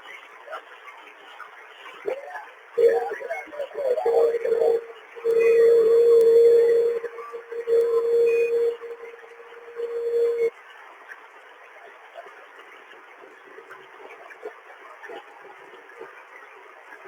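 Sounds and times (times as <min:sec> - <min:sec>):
radio static hiss: 0:02.8 - 0:10.5
steady radio tone: 0:02.8 - 0:10.5.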